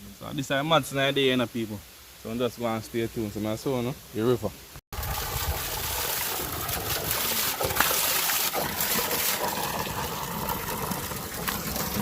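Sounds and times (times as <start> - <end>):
spring water running and splashing: 4.9 - 12.0.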